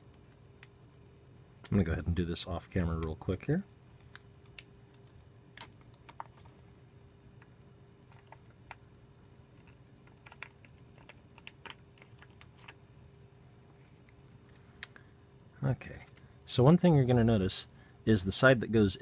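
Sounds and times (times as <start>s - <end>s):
faint hum: 0.0s - 19.0s
light clicks of computer parts: 2.9s - 6.5s.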